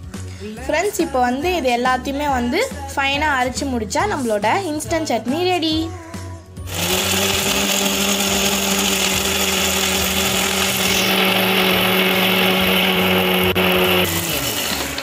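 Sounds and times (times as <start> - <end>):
electric mixer grinder whirring: 6.7 - 15.0.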